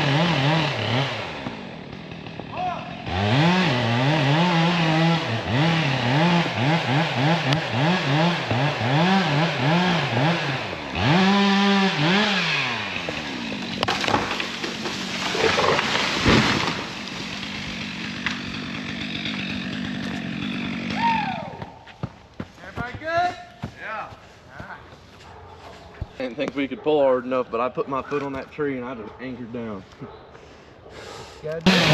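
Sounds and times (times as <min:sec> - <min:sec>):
chainsaw cutting: 0:00.0 - 0:23.0, 0:31.5 - 0:31.9
cracks: 0:13.5 - 0:18.5.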